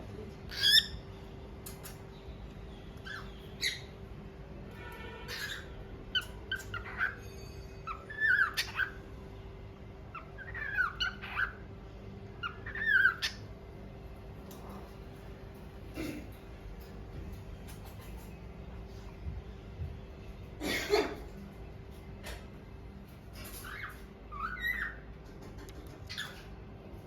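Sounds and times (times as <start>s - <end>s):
cockatiel chirping and whistling: 5.3s - 9.0s, 10.2s - 11.6s, 12.4s - 13.4s, 23.6s - 25.0s.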